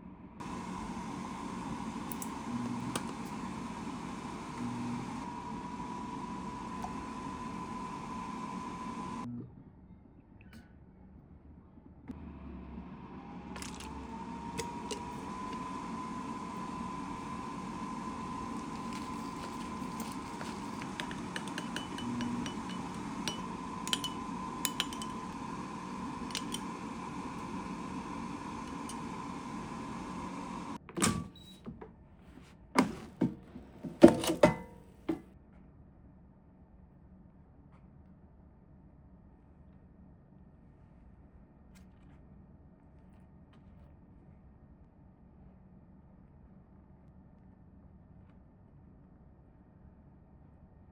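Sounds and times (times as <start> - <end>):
kitchen appliance motor whine: 0.4 - 9.3, 12.1 - 31.3, 32.8 - 35.2.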